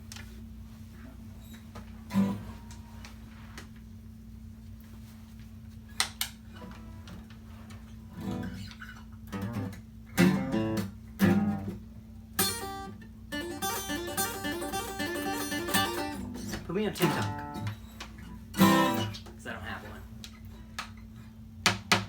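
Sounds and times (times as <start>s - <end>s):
faint steady hum: 0.0s - 22.0s
acoustic guitar strumming: 2.1s - 2.8s, 9.3s - 11.8s, 12.4s - 19.7s
taps on acoustic guitar: 12.4s - 19.4s, 20.3s - 22.0s.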